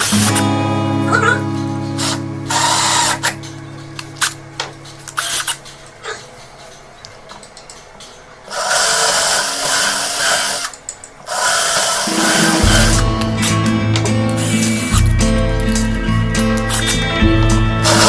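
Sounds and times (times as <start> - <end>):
power drill running: 8.5 - 10.7, 11.3 - 13.2, 14.4 - 18.0.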